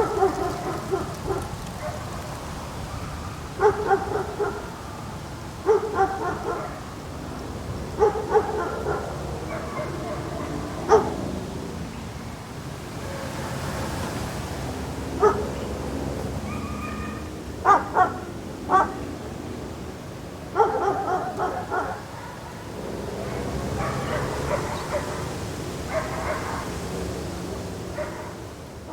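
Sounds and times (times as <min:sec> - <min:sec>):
dog barking: 0:00.0 - 0:02.2, 0:03.6 - 0:04.8, 0:05.6 - 0:06.8, 0:08.0 - 0:11.2, 0:15.2 - 0:15.5, 0:16.5 - 0:19.1, 0:20.6 - 0:26.8, 0:28.0 - 0:28.4.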